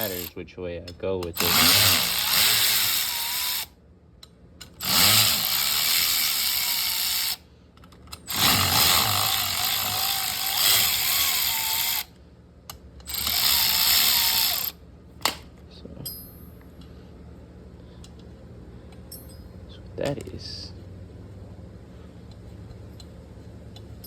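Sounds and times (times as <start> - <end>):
cordless impact gun whining: 0.0 - 0.3, 1.4 - 3.7, 4.7 - 7.4, 8.2 - 12.1, 13.1 - 14.8.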